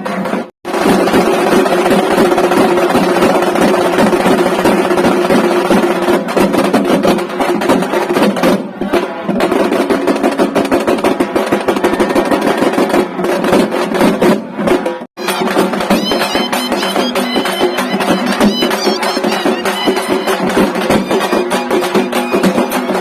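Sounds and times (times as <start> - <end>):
fast drumming: 0.0 - 23.0
held melody line: 15.2 - 23.0.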